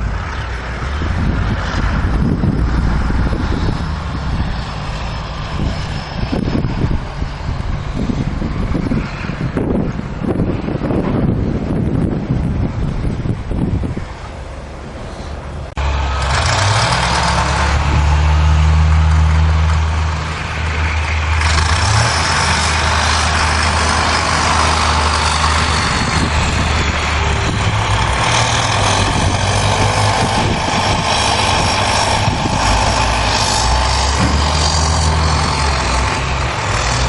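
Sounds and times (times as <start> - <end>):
large vehicle engine droning: 0.0 - 37.0.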